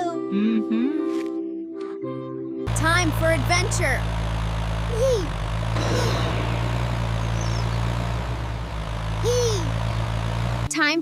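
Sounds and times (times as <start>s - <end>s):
cartoon engine drone: 2.7s - 10.7s
rising and falling tone: 3.4s - 10.7s.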